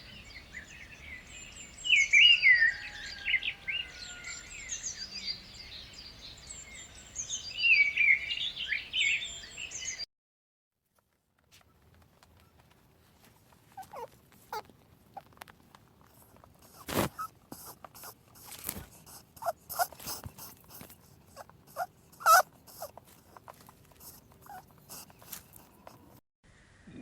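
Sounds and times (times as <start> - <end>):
animal squeaks: 13.8 - 14.7, 16.2 - 26.2
animal snort-like blows: 16.6 - 23.0.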